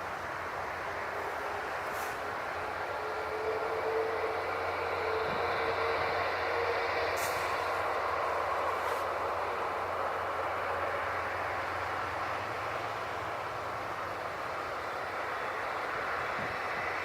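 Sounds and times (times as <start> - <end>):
airliner engines rushing: 0.0 - 17.0.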